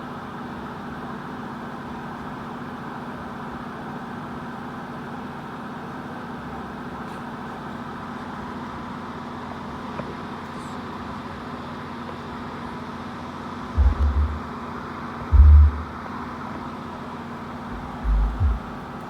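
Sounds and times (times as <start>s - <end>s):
low droning hum: 13.8s - 14.5s, 15.3s - 16.1s, 17.7s - 18.9s.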